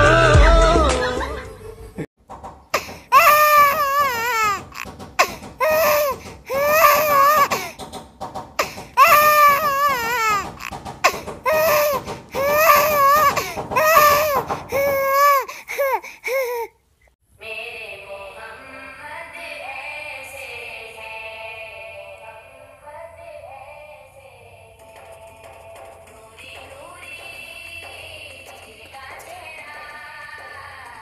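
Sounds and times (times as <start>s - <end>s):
baby crying: 2.8s - 7.8s, 8.6s - 16.8s.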